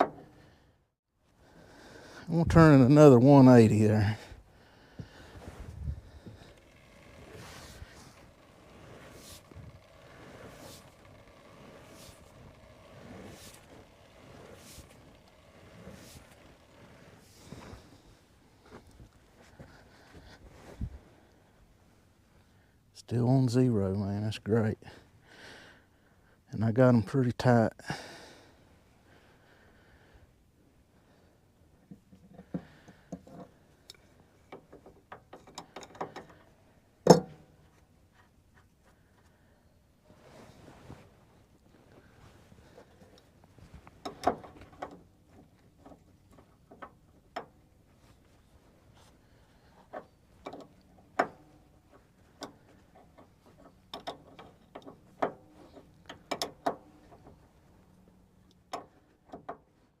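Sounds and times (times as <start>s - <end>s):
hand tools clicking and knocking: 31.9s - 37.5s, 49.6s - 57.5s.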